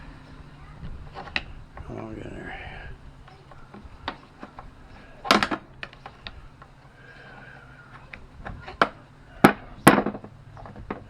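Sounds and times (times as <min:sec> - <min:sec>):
metal tools clicking and knocking: 0:03.2 - 0:11.0
sharp knocks: 0:03.3 - 0:11.0.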